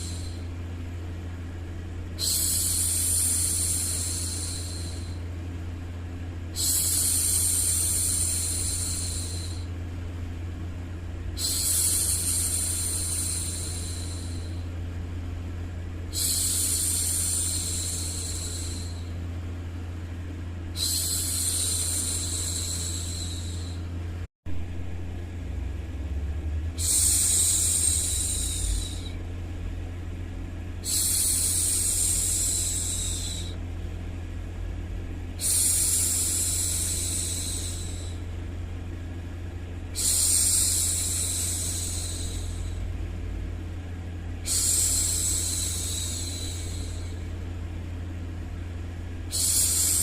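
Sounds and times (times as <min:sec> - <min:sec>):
low white noise hum: 0:00.0 - 0:50.0
woman shushing: 0:49.3 - 0:50.0.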